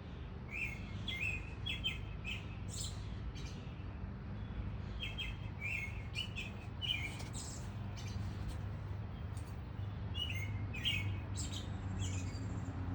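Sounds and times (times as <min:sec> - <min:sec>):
songbirds chirping: 0:00.0 - 0:12.9.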